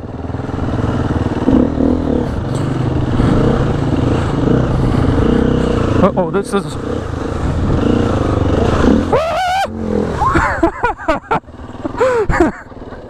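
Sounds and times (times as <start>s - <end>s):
dirt bike engine revving: 0.0s - 13.0s
motorcycle splashing through water: 0.1s - 13.0s
rider shouting: 8.5s - 10.6s.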